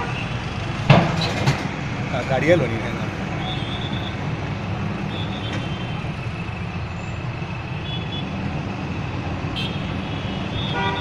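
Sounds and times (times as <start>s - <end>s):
diesel engine rumbling: 0.0s - 11.0s.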